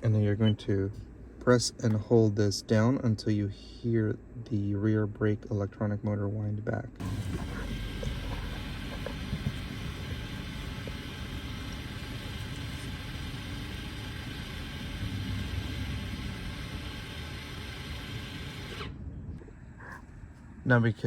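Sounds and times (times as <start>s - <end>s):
parking brake motor whirring: 7.0s - 19.1s.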